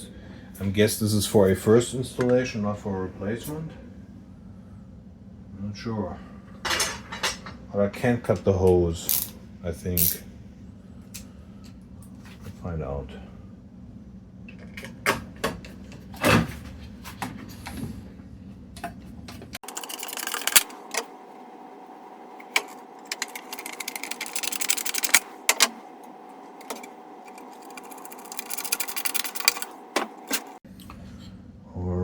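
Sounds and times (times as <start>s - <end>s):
clicks and knocks of parts handled: 18.8s - 21.0s, 22.4s - 25.8s, 26.6s - 30.6s
steady machine whine: 19.3s - 30.6s
rapid mechanical ticking: 19.6s - 21.0s, 22.4s - 30.6s.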